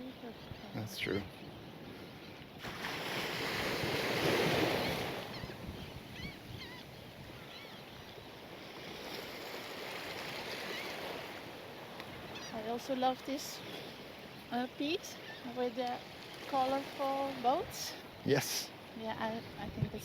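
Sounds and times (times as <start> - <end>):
sea waves washing ashore: 0.0 - 20.0
faint bird chirps: 4.8 - 8.4, 10.5 - 11.1, 12.2 - 16.2.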